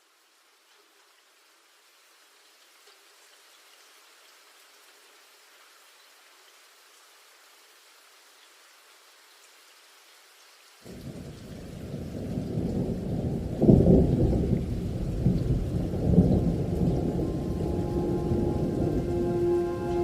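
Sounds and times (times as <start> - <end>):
low rumbling noise: 15.3 - 20.0
steady musical tones: 16.4 - 20.0.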